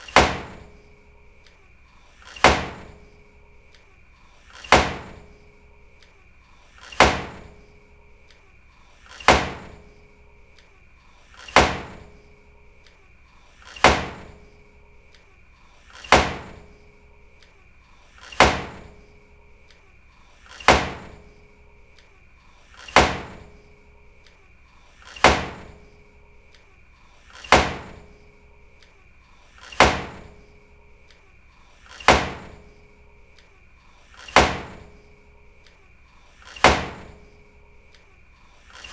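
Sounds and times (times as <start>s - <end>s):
door slamming: 0.1s - 0.7s, 2.3s - 2.9s.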